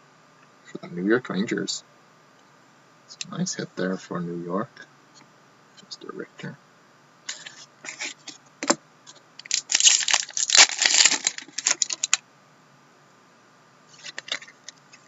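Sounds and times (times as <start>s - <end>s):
cards and plastic clicking: 9.4s - 12.2s
packaging tearing and crinkling: 9.4s - 12.2s.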